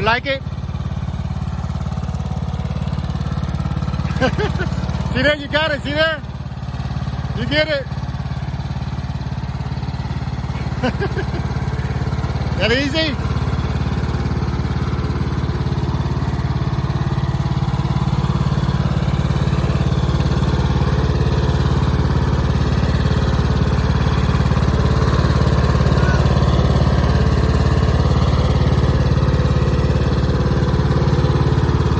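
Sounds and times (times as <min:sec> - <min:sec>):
lawnmower engine running: 0:00.0 - 0:31.9.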